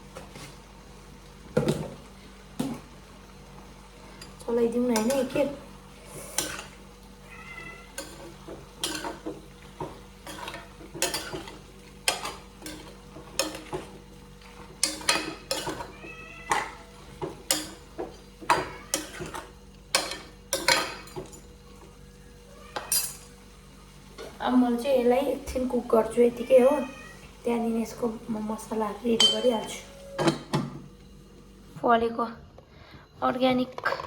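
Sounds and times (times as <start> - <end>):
faint sizzle: 0.0 - 34.0
spoon scraping and clanking on pan: 6.0 - 6.8, 7.6 - 21.5
cat meowing: 7.2 - 8.0, 15.6 - 17.0, 18.5 - 19.2, 22.5 - 23.1, 26.3 - 27.3.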